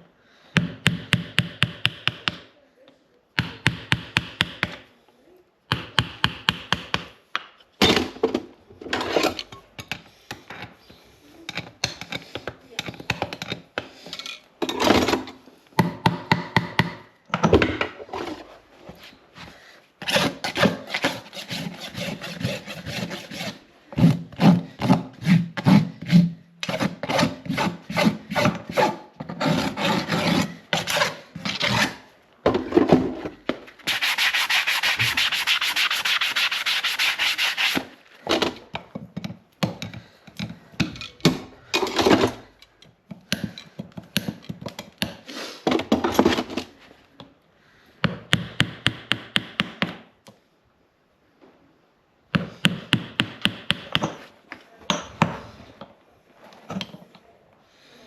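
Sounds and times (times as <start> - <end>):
rasp filing hoof: 20.0 - 32.0, 33.8 - 37.9.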